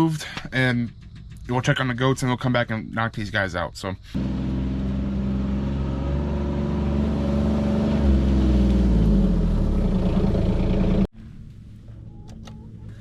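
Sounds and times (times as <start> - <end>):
vehicle engine running: 4.2 - 13.0.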